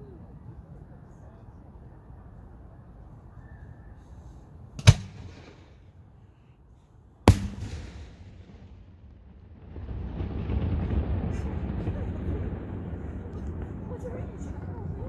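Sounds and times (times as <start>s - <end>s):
firework bursts: 7.3s - 15.0s.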